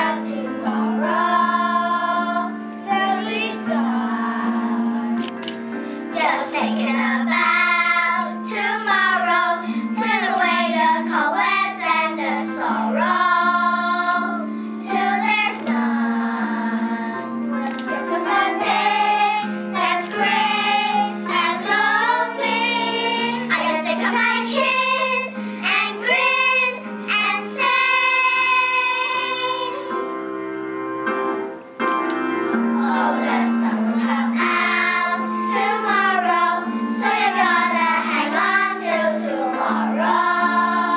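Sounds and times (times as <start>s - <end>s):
children singing: 0.0s - 5.4s, 6.1s - 30.0s, 32.5s - 40.9s
instrumental accompaniment: 0.0s - 40.9s.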